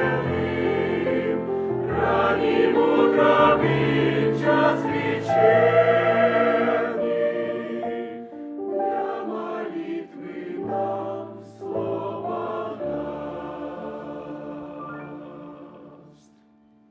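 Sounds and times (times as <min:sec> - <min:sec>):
choir singing a hymn: 0:00.0 - 0:16.4.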